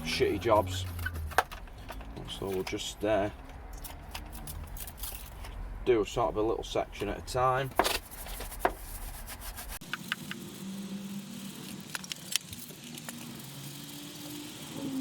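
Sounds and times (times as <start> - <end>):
stiff brush scrubbing: 7.9 - 9.8.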